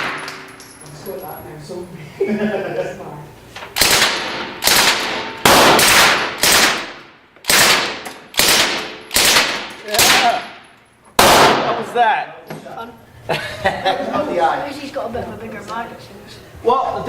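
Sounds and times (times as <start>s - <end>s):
gunshots: 3.8s - 10.6s, 11.2s - 12.0s.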